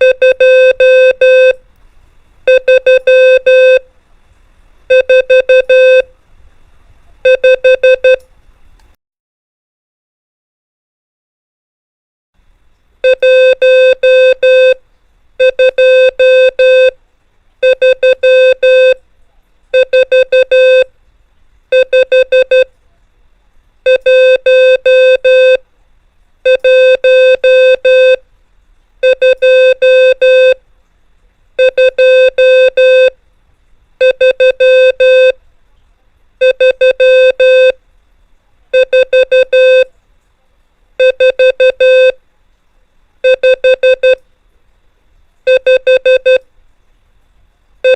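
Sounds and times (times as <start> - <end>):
morse code tones: 0.0 - 1.6, 2.5 - 3.8, 4.9 - 6.1, 7.3 - 8.2, 13.0 - 14.8, 15.4 - 17.0, 17.6 - 19.0, 19.8 - 20.9, 21.7 - 22.7, 23.9 - 25.6, 26.5 - 28.2, 29.0 - 30.6, 31.6 - 33.2, 34.0 - 35.4, 36.4 - 37.8, 38.8 - 39.9, 41.0 - 42.2, 43.3 - 44.2, 45.5 - 46.4.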